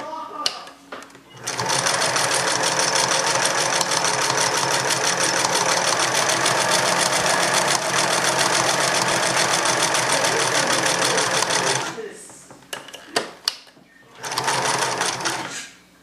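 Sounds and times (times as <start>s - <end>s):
sewing machine stitching: 1.3s - 12.0s, 14.1s - 15.6s.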